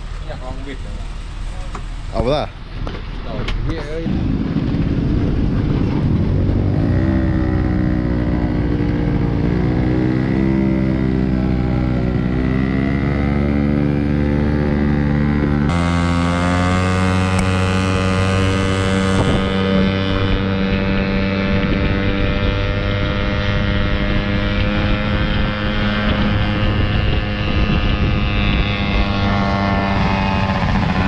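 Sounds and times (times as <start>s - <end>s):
two-stroke scooter engine revving: 6.3s - 31.0s.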